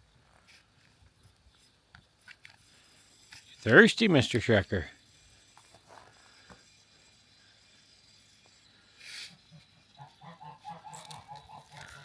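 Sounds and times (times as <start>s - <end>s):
poultry clucking: 9.5s - 12.0s.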